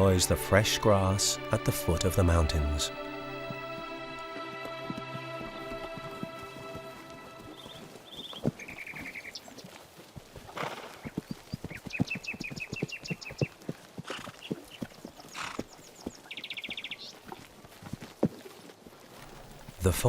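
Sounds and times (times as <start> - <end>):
bird chirping high trills: 0.0 - 9.3
horse hooves clattering: 0.0 - 20.0.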